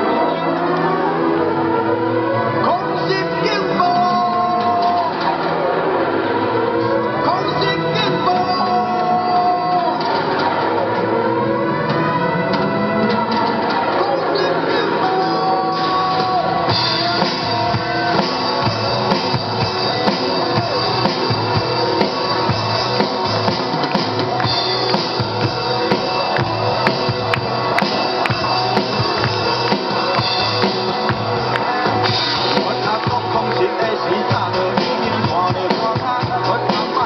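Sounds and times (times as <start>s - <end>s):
live rock band playing: 11.9s - 37.0s.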